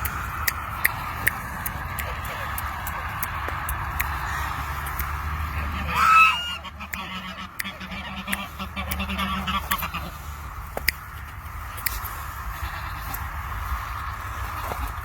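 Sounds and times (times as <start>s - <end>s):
soft goose calls: 0.9s - 11.4s
goose honking: 4.1s - 4.8s, 5.4s - 10.4s.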